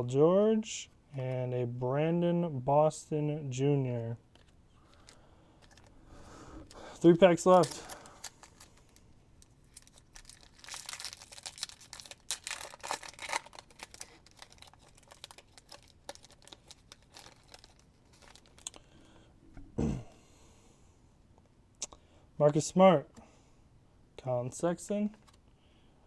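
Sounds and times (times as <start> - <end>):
foil wrapper tearing and crinkling: 4.9 - 5.9, 6.7 - 18.8.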